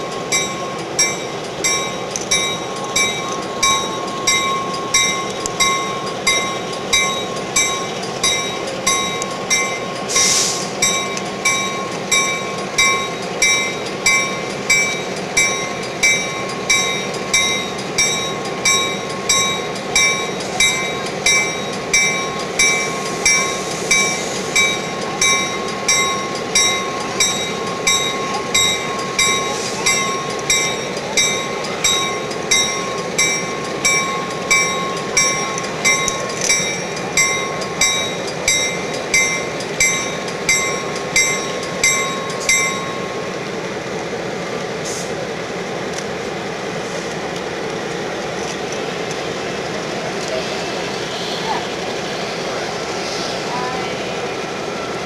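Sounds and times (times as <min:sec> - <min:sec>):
locomotive bell ringing: 0:00.0 - 0:44.0
locomotive engine idling: 0:00.0 - 0:55.0
air hiss: 0:10.0 - 0:10.8, 0:22.8 - 0:25.0.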